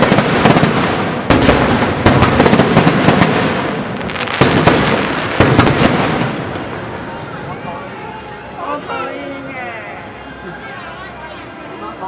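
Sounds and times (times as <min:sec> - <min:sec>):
fireworks cracking and popping: 0:00.0 - 0:07.4.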